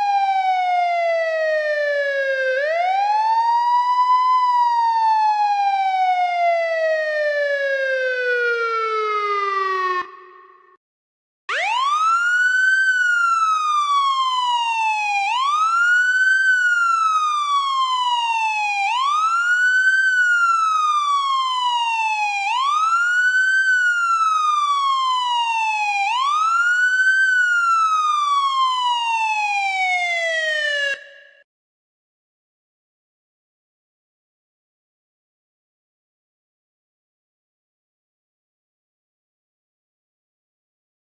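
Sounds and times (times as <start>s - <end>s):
police siren wailing: 0.0s - 10.8s, 11.5s - 31.4s.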